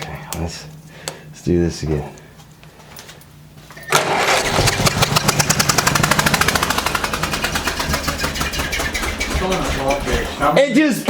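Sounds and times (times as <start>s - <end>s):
tractor engine starting and running: 3.9s - 10.6s.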